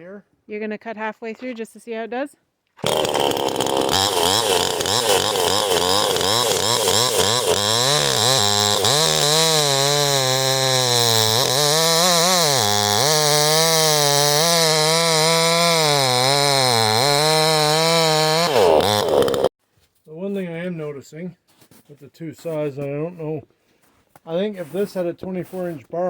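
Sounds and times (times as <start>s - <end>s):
chainsaw cutting wood: 2.8s - 19.5s.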